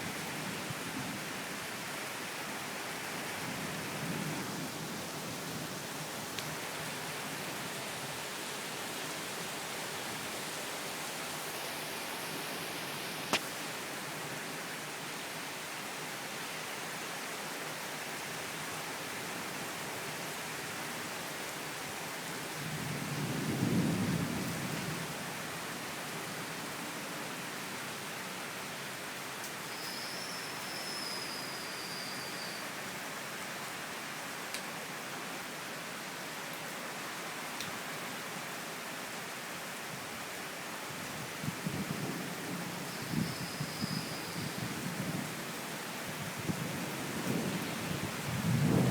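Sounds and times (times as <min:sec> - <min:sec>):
rain hiss: 0:00.0 - 0:48.9
low roll of thunder: 0:46.5 - 0:48.9.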